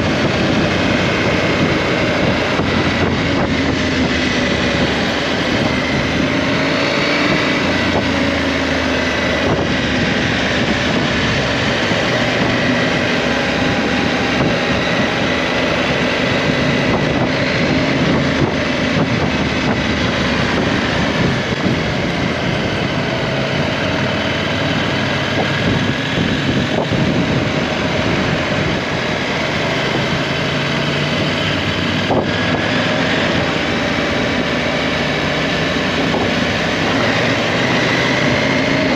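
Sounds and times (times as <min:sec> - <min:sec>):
motorcycle engine running: 0:00.0 - 0:38.9
wind noise on microphone: 0:00.0 - 0:38.9.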